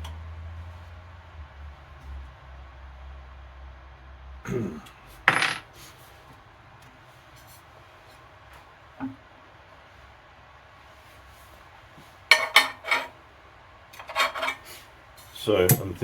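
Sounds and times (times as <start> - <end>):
metal scrape: 12.3 - 13.2, 14.0 - 14.9.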